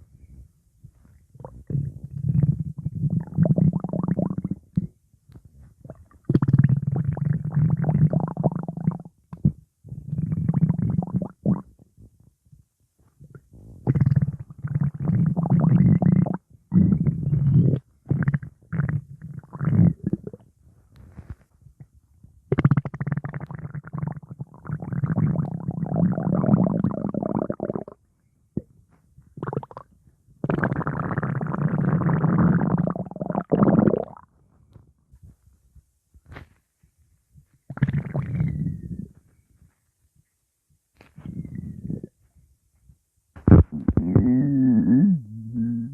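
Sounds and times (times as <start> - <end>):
stomach growling: 1.0 - 11.9, 13.1 - 28.0, 29.4 - 34.8, 37.7 - 39.3, 41.0 - 42.2, 43.4 - 45.9.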